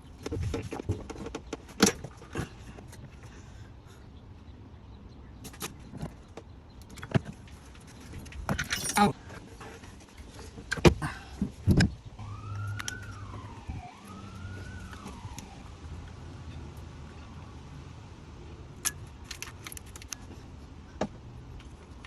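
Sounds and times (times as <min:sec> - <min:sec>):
metal tools clattering: 0:08.5 - 0:09.2
distant siren wailing: 0:12.2 - 0:18.0.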